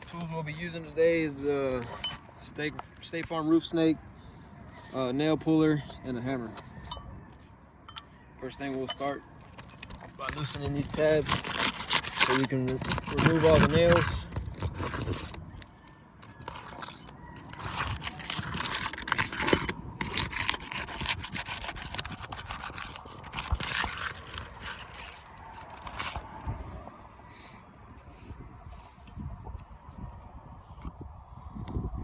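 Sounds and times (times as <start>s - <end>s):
tool scraping under roof shingles: 8.4s - 26.7s.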